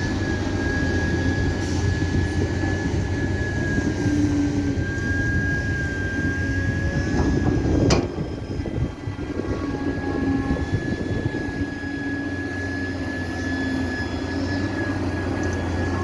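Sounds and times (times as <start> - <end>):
excavator diesel drone: 0.0 - 16.0
high whine: 0.0 - 16.0.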